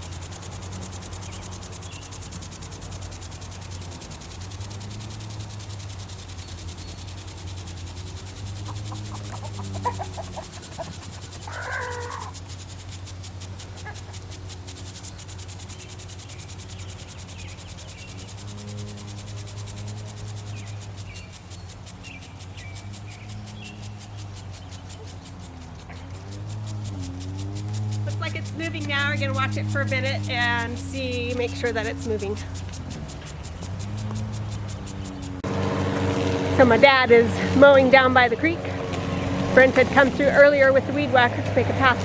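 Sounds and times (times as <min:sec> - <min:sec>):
quick chirps: 0:00.0 - 0:35.6
low motor hum: 0:00.0 - 0:42.0
animal call: 0:08.5 - 0:12.5, 0:13.7 - 0:14.3.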